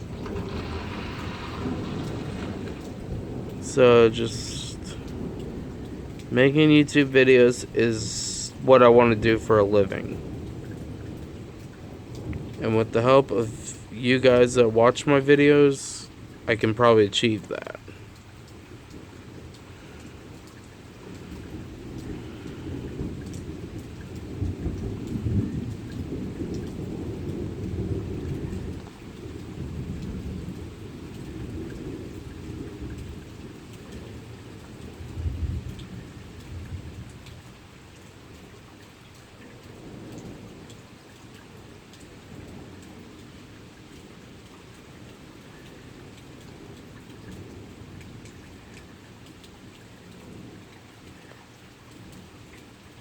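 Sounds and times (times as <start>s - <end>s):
sharp thunder crack: 0.0s - 5.8s
thunder rolling: 0.0s - 18.0s, 19.0s - 37.2s
steady rain: 0.0s - 53.0s.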